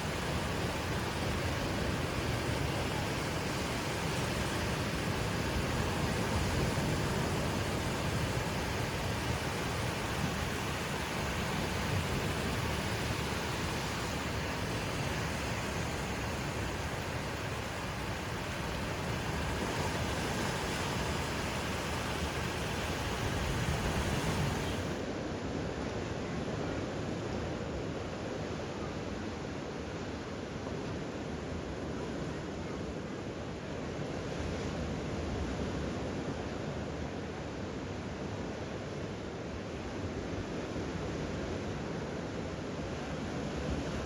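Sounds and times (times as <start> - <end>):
ocean surf breaking on beach: 0.0 - 25.0.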